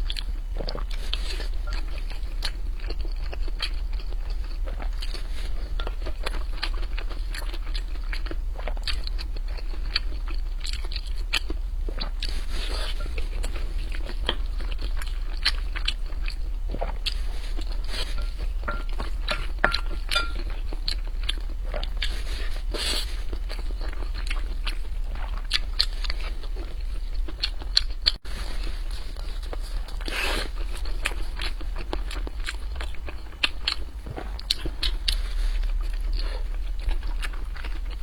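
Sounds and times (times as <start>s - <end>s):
chewing and mouth sounds: 0.0s - 38.0s
low hum: 11.6s - 21.7s.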